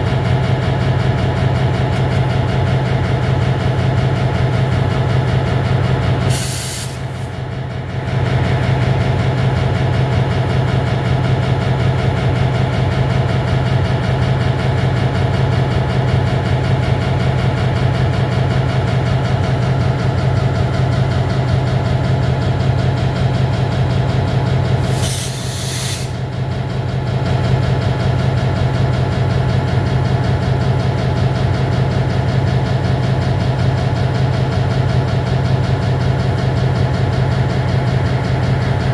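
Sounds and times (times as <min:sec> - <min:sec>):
diesel locomotive idling: 0:00.0 - 0:38.9
air hiss: 0:06.3 - 0:07.3, 0:24.8 - 0:26.2.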